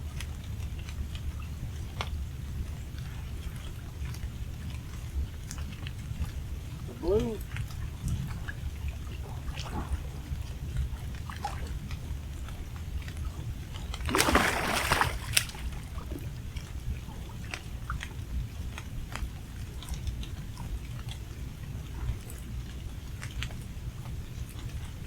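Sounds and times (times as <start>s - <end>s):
fish splashing and thrashing in water: 13.8s - 16.3s.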